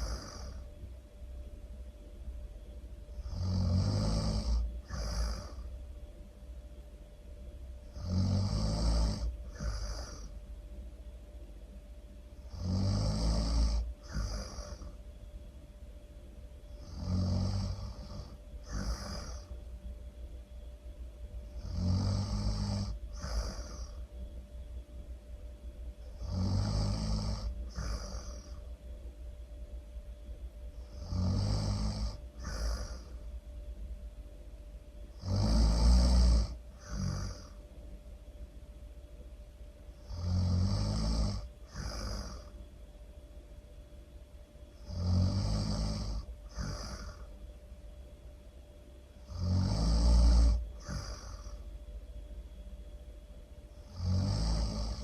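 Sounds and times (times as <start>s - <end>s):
airy out-breath hiss: 0.0s - 0.6s, 31.0s - 33.3s, 44.9s - 47.3s, 49.3s - 51.7s
person snoring: 0.0s - 0.7s, 3.1s - 5.7s, 7.9s - 10.4s, 12.4s - 15.0s, 16.7s - 19.7s, 21.4s - 24.1s, 26.0s - 28.7s, 30.7s - 33.3s, 35.1s - 37.6s, 40.0s - 42.6s, 44.8s - 47.4s, 49.2s - 51.7s, 53.7s - 55.0s.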